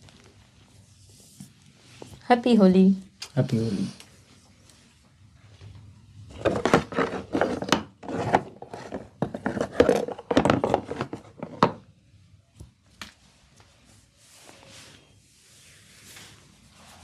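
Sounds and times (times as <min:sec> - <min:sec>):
hands rubbing hair and scalp: 0:13.1 - 0:17.0.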